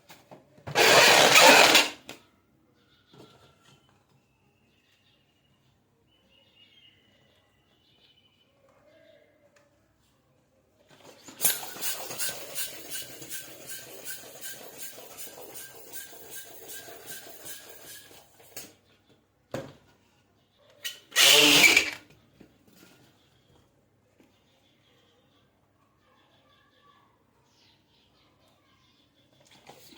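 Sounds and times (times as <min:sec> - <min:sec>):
hand pump strokes: 0:00.7 - 0:02.0, 0:11.2 - 0:18.6, 0:20.9 - 0:22.0.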